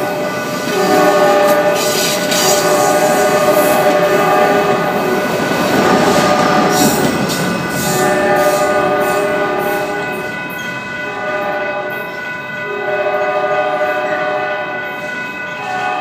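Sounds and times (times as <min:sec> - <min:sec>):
train wheels clattering: 0:00.0 - 0:12.2
high ringing tones: 0:06.0 - 0:16.0.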